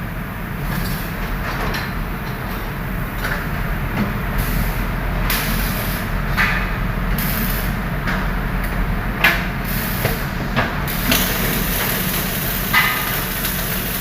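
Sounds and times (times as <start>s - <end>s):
welding electrical hum: 0.0s - 14.0s
welding arc crackling hiss: 4.3s - 6.5s, 7.1s - 7.9s, 9.6s - 14.0s.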